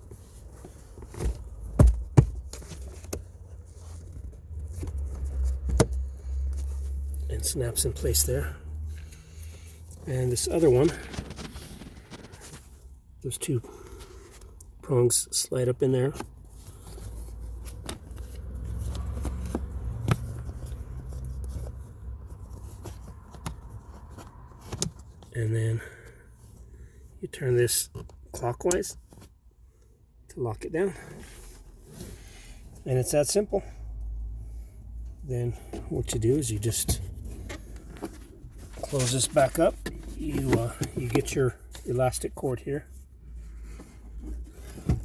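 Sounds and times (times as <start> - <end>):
low steady rumble: 29.5 - 42.0.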